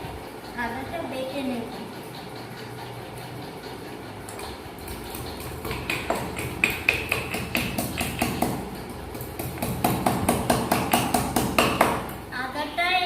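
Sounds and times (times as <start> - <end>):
metal pestle pounding in mortar: 5.1 - 12.2.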